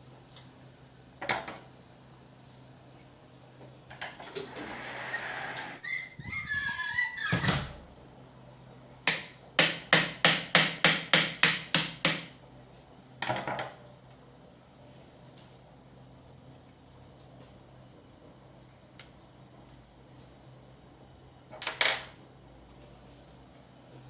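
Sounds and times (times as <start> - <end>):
screeching scraping: 4.6 - 7.8.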